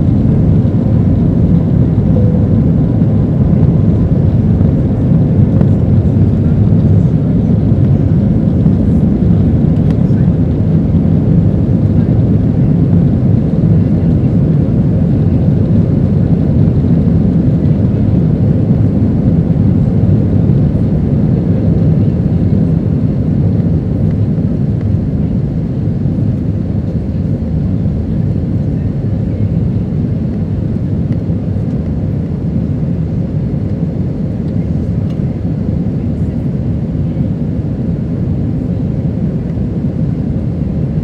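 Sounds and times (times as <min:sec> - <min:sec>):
jet engine rumble in cabin: 0:00.0 - 0:41.0.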